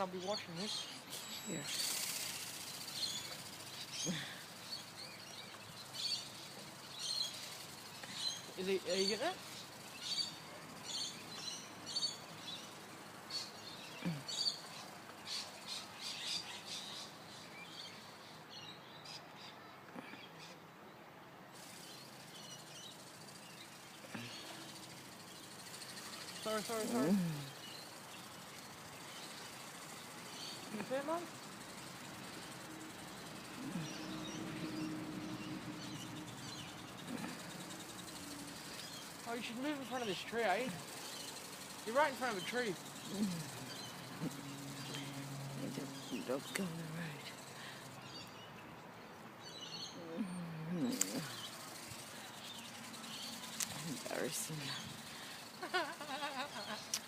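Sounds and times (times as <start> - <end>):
faint outdoor background noise: 0.0 - 57.0
small birds chirping: 0.0 - 57.0
steady low hum: 21.4 - 48.5.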